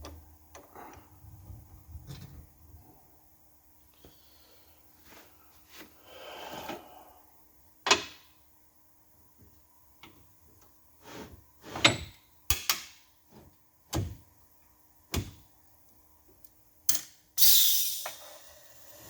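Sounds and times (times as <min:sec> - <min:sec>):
short loud hiss: 0:17.4 - 0:19.0.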